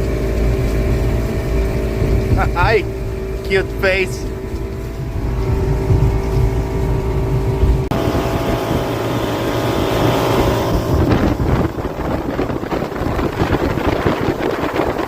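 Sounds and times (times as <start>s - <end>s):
motorboat engine running: 0.0s - 15.0s
wind and water rushing: 0.0s - 15.0s.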